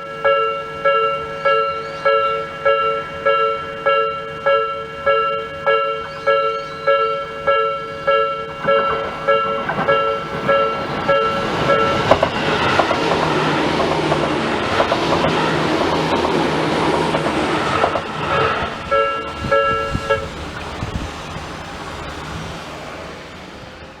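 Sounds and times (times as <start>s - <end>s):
level crossing alarm bell: 0.0s - 13.6s, 17.4s - 21.0s
train passing with clatter: 0.0s - 24.0s.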